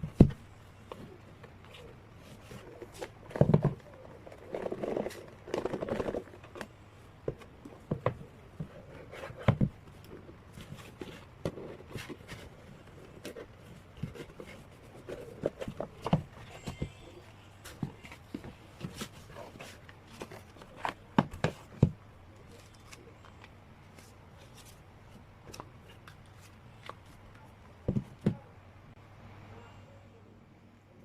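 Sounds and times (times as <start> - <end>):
paper and plastic rustling: 8.6 - 27.2.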